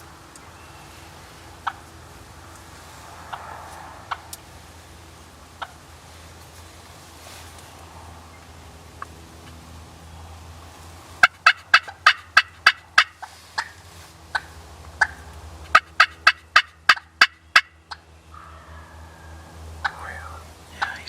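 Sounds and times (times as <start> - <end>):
turkey yelping: 1.6 - 1.9, 11.2 - 21.0.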